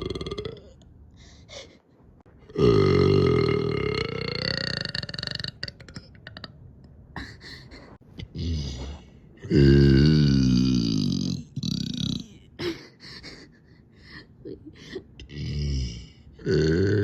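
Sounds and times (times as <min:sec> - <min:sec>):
person burping: 0:00.0 - 0:00.9, 0:02.4 - 0:06.6, 0:08.2 - 0:12.7, 0:15.2 - 0:17.0.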